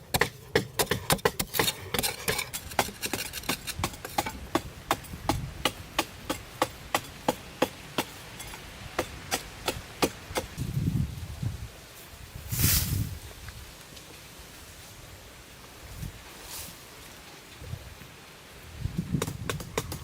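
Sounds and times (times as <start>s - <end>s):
hand tool knocking: 0.0s - 10.5s.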